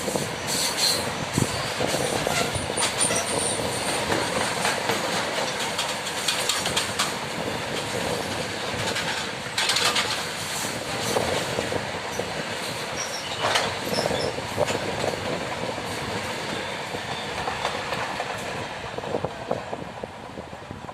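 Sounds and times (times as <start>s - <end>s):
steel wheels rumbling on rail: 0.0s - 20.9s
clacks over rail joints: 0.6s - 19.9s
faint high wheel squeal: 12.9s - 14.4s.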